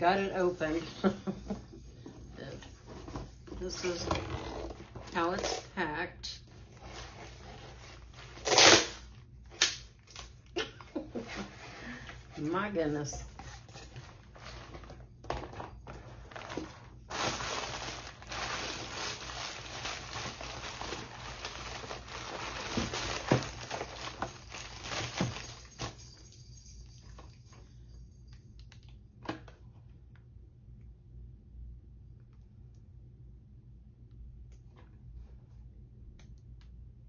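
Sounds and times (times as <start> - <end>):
packaging crinkling and rustling: 13.2 - 26.3.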